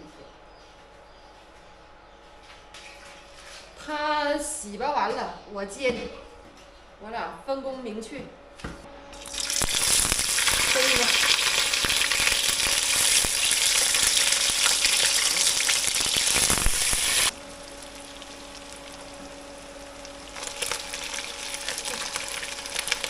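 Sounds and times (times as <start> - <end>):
steady low hum: 0.0 - 23.0
fish sizzling in hot oil: 9.2 - 23.0.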